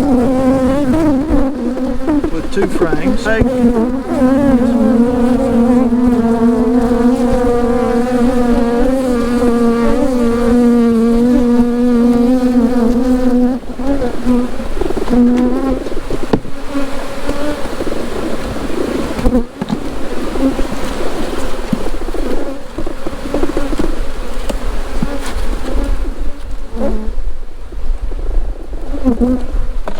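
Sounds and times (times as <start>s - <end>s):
bees buzzing: 0.0s - 14.4s.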